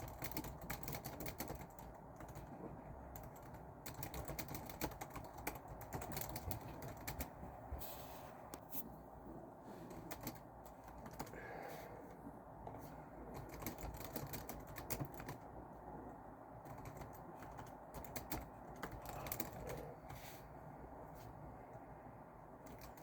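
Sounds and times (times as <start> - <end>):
computer keyboard typing: 0.0 - 7.5, 9.8 - 11.4, 12.6 - 15.6, 16.5 - 20.2, 22.4 - 23.0
low background noise: 0.0 - 23.0.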